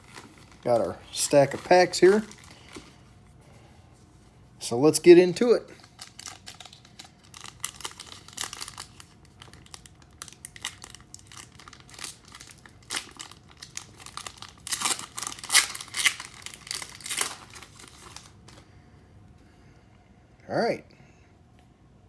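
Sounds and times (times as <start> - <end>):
card pack wrappers crinkling: 0.0 - 3.2, 5.0 - 18.6.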